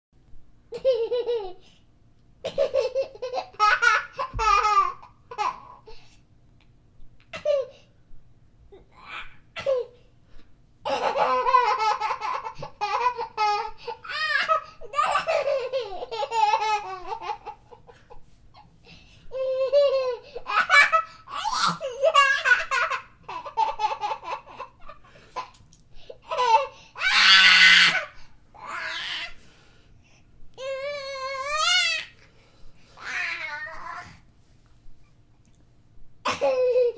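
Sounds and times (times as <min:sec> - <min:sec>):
young child laughing: 0:00.7 - 0:01.7, 0:02.5 - 0:05.9, 0:10.9 - 0:18.7, 0:19.3 - 0:28.2, 0:36.2 - 0:36.9
child shrieking with laughter: 0:27.0 - 0:29.4.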